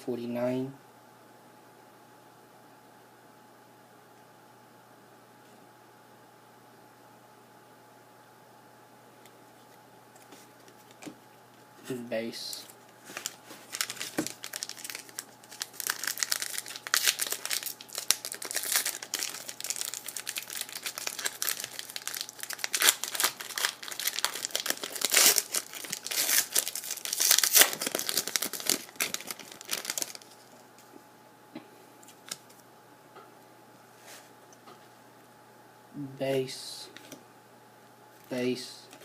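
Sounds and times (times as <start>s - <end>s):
plastic wrapper tearing and crinkling: 12.6s - 30.5s.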